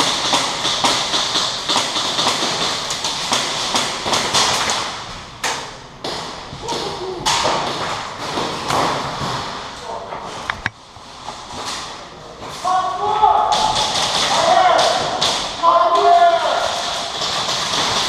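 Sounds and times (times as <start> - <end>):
airsoft guns popping: 0.0 - 9.0, 13.5 - 16.2.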